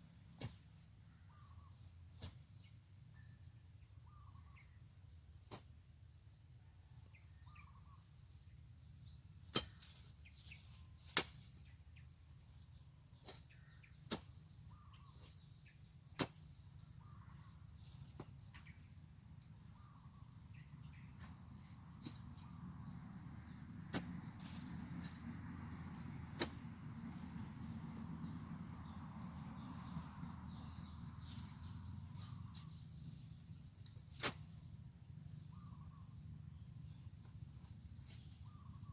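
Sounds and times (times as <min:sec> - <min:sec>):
high insect drone: 0:11.7 - 0:38.9.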